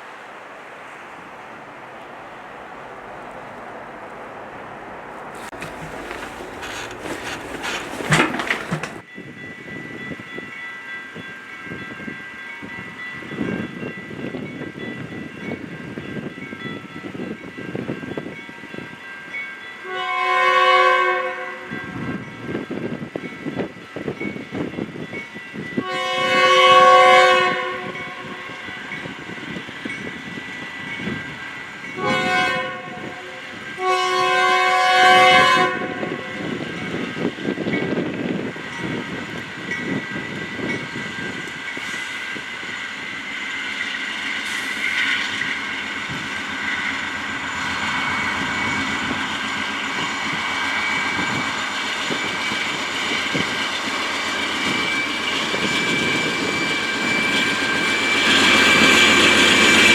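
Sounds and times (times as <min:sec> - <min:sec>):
train wheels on rails: 0:00.0 - 0:19.9, 0:21.7 - 0:59.9
train air horn blasts: 0:19.8 - 0:22.2, 0:25.8 - 0:28.9, 0:32.0 - 0:36.6.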